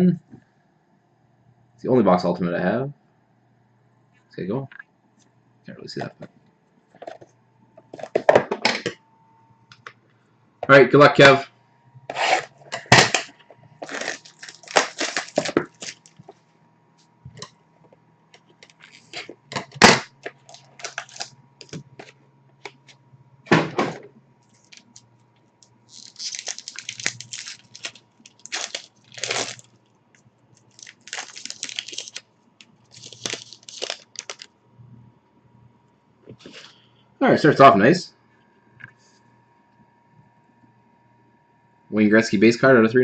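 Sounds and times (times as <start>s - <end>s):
card packaging clicks and snaps: 12.8s - 16.2s, 19.6s - 22.8s, 25.9s - 29.7s, 30.6s - 32.2s, 32.9s - 34.5s
wrapper crinkling and tearing: 12.9s - 16.3s, 18.6s - 22.1s, 24.5s - 25.0s, 25.9s - 29.8s, 30.5s - 34.5s.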